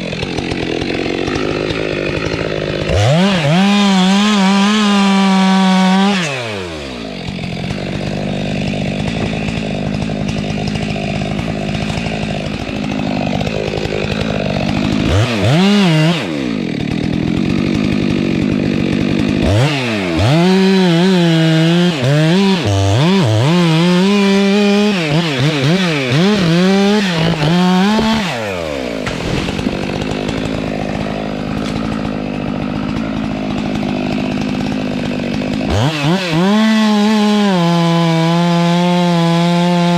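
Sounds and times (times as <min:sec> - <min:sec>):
chainsaw cutting into wood: 0:00.0 - 0:39.9
chainsaw revving and idling: 0:00.0 - 0:39.9.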